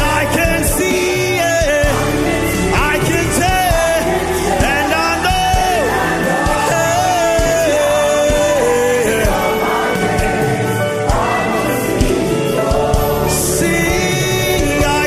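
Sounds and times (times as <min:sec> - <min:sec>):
band with drumbeat: 0:00.0 - 0:15.0.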